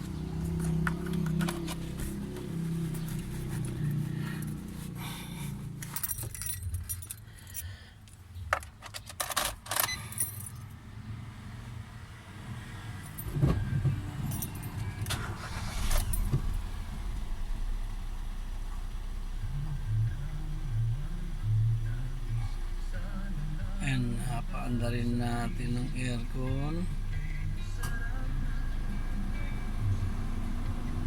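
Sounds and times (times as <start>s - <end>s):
car engine starting and idling: 0.0s - 8.2s, 12.7s - 31.0s
car keys jangling: 5.8s - 10.7s, 14.2s - 16.5s.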